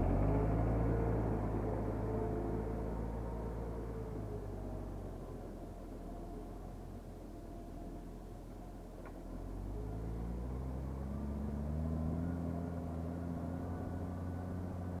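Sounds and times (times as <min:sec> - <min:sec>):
tractor diesel engine running: 0:00.0 - 0:09.8.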